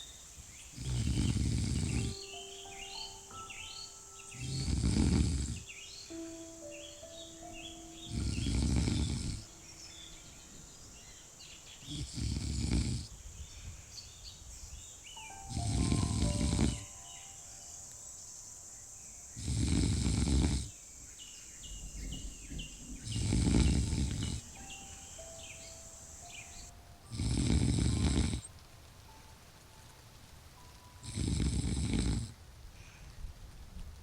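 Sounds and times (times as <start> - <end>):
person snoring: 0.8 - 2.2, 4.4 - 5.7, 8.1 - 9.5, 11.9 - 13.1, 15.5 - 16.9, 19.4 - 20.7, 23.1 - 24.5, 27.1 - 28.5, 31.0 - 32.3.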